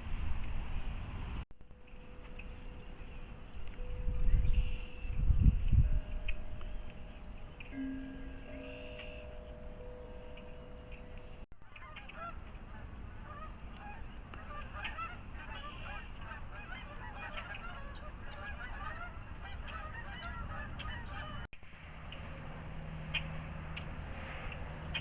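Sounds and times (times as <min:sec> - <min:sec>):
low outdoor rumble: 0:00.0 - 0:25.0
flock of birds calling: 0:01.9 - 0:21.5.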